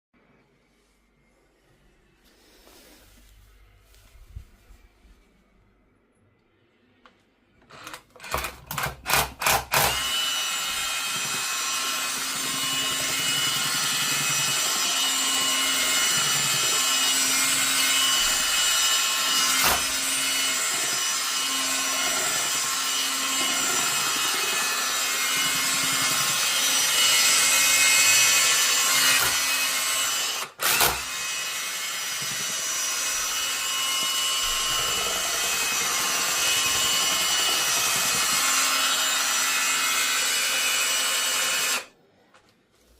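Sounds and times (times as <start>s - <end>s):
rotary hammer drill running: 7.7s - 41.9s.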